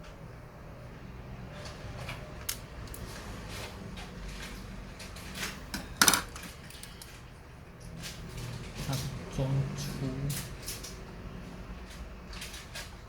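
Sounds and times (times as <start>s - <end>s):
metal parts clattering: 5.3s - 7.2s.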